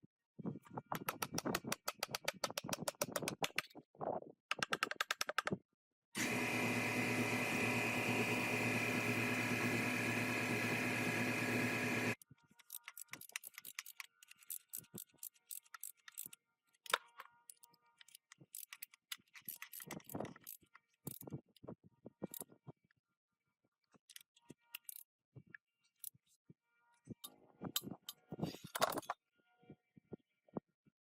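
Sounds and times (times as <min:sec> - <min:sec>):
power tool running: 0:06.2 - 0:12.2
small metal parts clinking: 0:12.5 - 0:21.3, 0:27.8 - 0:29.2.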